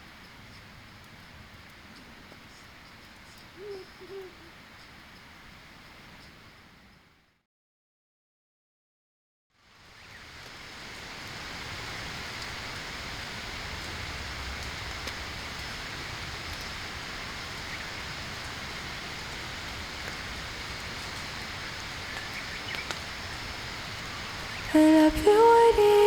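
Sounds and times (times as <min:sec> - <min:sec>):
faint ticks: 0:00.0 - 0:05.0, 0:22.1 - 0:23.0
steady rain-like hiss: 0:00.0 - 0:07.4, 0:09.5 - 0:26.0.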